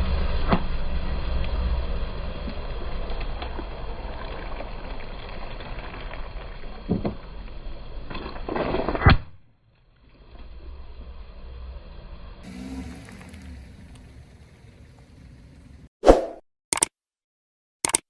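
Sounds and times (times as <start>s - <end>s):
car rolling and rumbling: 0.0s - 8.4s, 10.0s - 15.9s.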